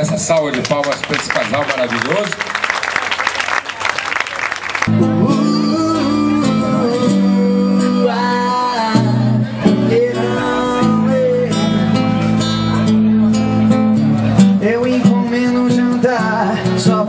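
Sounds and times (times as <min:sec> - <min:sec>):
crowd applauding: 0:00.0 - 0:05.0
guitar: 0:04.8 - 0:17.0
person singing: 0:04.9 - 0:12.0, 0:14.6 - 0:17.0.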